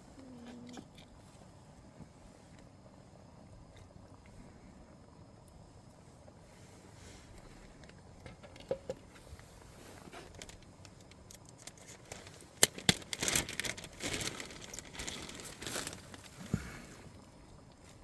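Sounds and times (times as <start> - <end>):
crinkling and rustling handling: 6.6 - 18.0.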